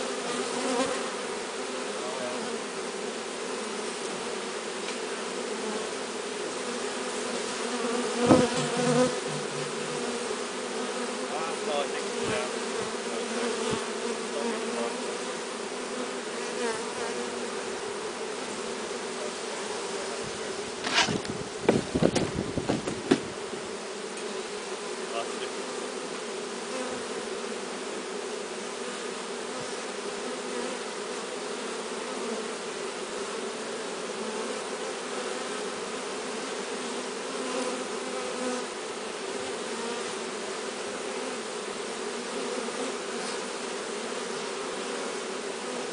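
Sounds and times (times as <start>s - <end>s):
bee swarm buzzing: 0.0s - 45.9s
loud knocks and clatter: 20.8s - 23.3s.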